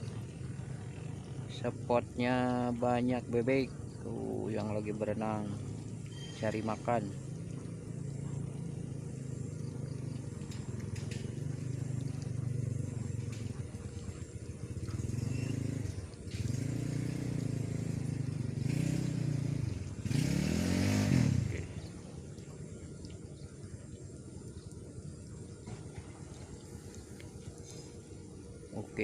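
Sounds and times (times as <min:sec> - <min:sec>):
vehicle engine revving: 0:04.9 - 0:23.0.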